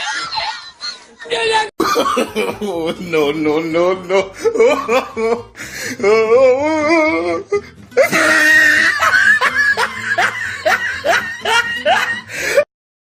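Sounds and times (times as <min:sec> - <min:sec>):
loud laughter bursts: 0:00.0 - 0:03.0, 0:08.0 - 0:12.6
music: 0:01.9 - 0:12.7
wavering voice: 0:06.0 - 0:08.9.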